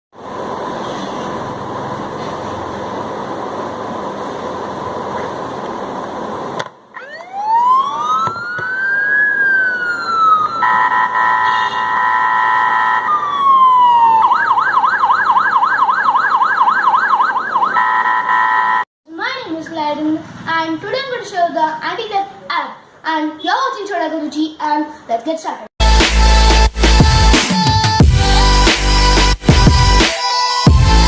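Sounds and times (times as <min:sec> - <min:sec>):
electronic siren: 0:06.9 - 0:18.9.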